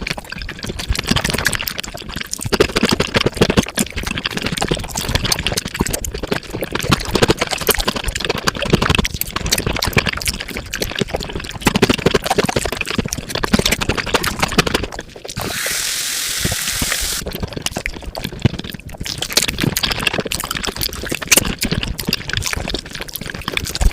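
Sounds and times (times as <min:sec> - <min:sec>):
sped-up chewing clicks: 0:00.0 - 0:23.9
steady hiss: 0:15.4 - 0:17.2.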